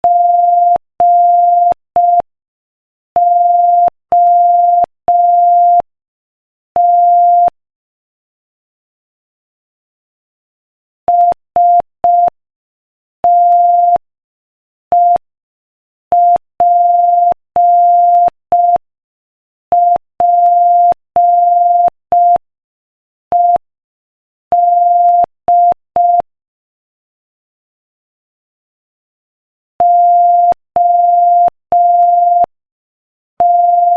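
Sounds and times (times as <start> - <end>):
morse code beeps: 0.0 - 2.2, 3.2 - 5.8, 6.8 - 7.6, 13.3 - 14.0, 19.8 - 22.4, 24.6 - 26.2, 29.8 - 32.5, 33.4 - 33.9.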